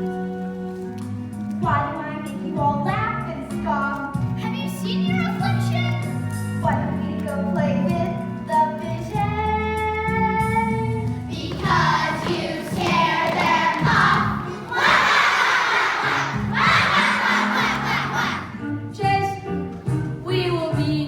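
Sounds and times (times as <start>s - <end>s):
instrumental accompaniment: 0.0s - 21.0s
children singing: 11.3s - 18.6s.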